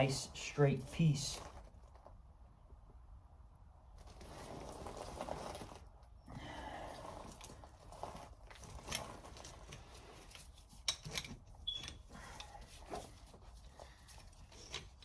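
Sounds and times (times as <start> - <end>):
metal tool clicks and knocks: 10.8 - 12.5.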